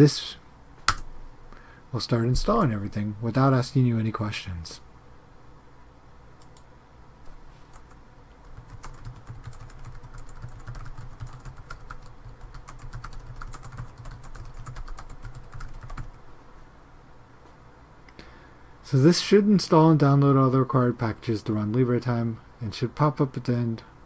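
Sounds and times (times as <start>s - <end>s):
computer keyboard typing: 7.7s - 16.2s.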